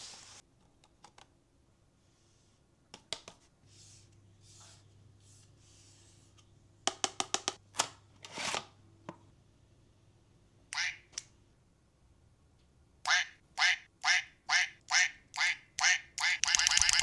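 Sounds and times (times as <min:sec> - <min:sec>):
fidget toy clicks: 0:16.4 - 0:17.0.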